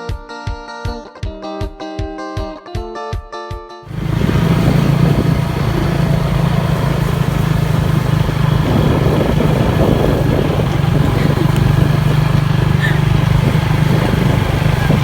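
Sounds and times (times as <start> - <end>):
road and wind noise: 3.9 - 15.0
vehicle engine running: 3.9 - 15.0.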